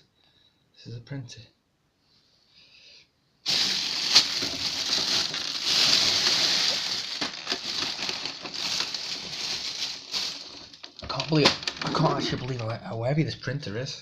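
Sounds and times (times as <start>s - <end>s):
packaging rustling and crinkling: 3.5s - 12.6s.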